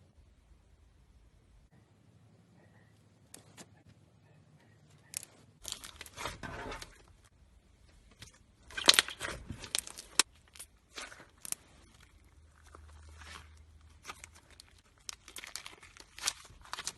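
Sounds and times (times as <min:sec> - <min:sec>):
slime crackling and popping: 0:08.6 - 0:16.9.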